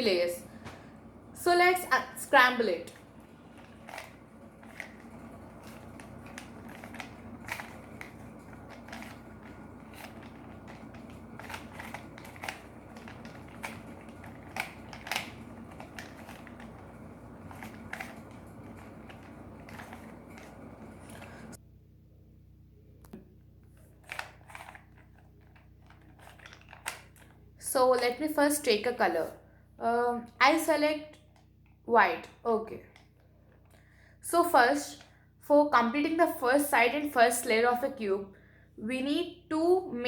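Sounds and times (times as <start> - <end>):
puzzle cube clicking: 3.5 - 21.4.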